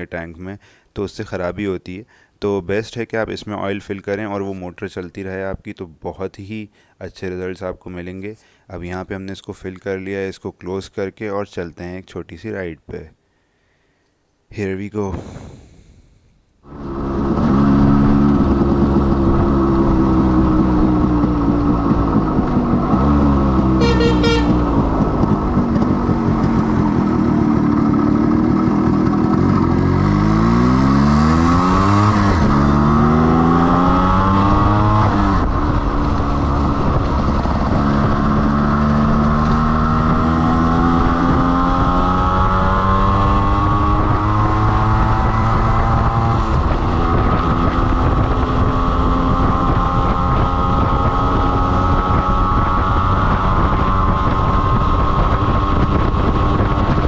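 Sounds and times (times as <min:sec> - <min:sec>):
two-stroke motorcycle engine accelerating: 0:16.7 - 0:57.0.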